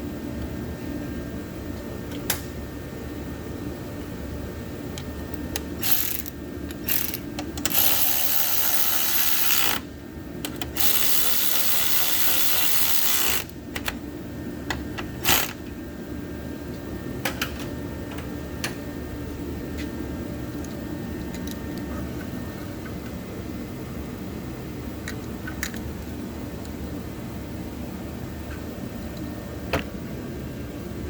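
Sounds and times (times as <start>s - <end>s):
rapid ratcheting: 5.8s - 9.8s, 15.2s - 15.6s.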